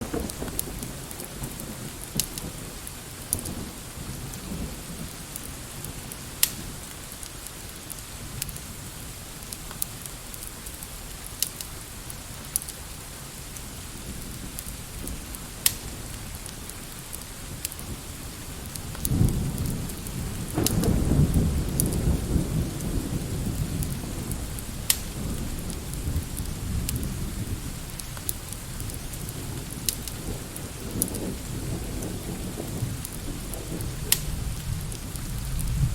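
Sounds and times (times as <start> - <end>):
thunder rolling: 0.0 - 6.9, 17.8 - 35.9
steady rain: 0.0 - 35.9.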